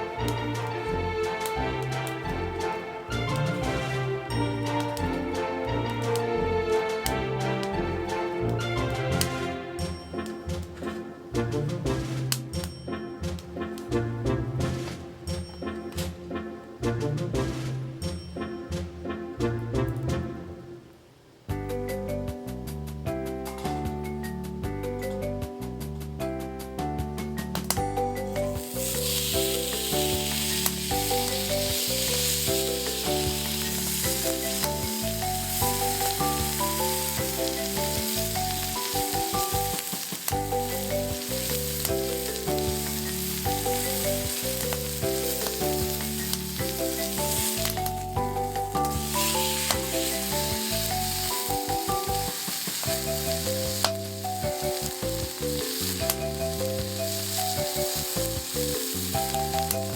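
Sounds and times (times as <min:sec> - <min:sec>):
steak sizzling in frying pan: 0:00.0 - 0:09.3, 0:28.2 - 0:59.9
background music with bass: 0:00.0 - 0:20.7, 0:21.5 - 0:59.9.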